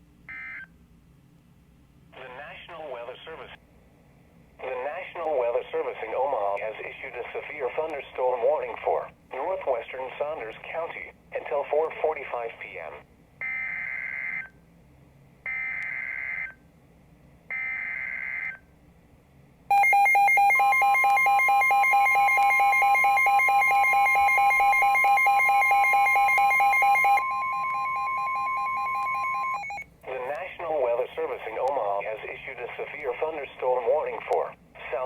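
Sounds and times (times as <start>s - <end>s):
steady alert attention tone: 19.7s - 29.8s
warbling digital data tones: 19.7s - 29.8s.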